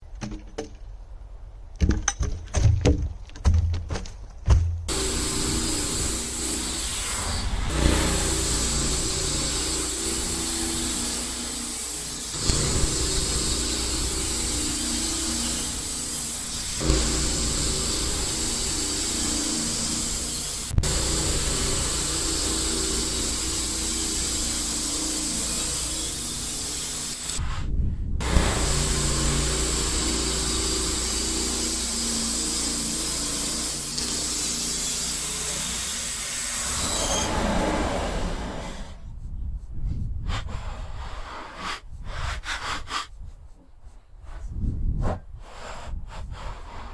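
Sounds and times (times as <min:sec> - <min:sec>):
sawmill engine running: 0:04.9 - 0:27.4, 0:28.2 - 0:39.0
saw blade cutting log: 0:04.9 - 0:27.6, 0:28.2 - 0:39.0.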